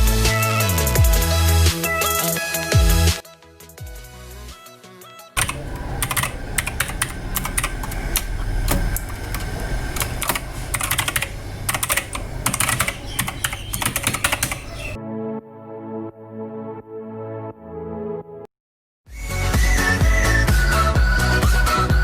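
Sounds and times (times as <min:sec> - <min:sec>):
mechanical keyboard typing: 0:05.4 - 0:15.0.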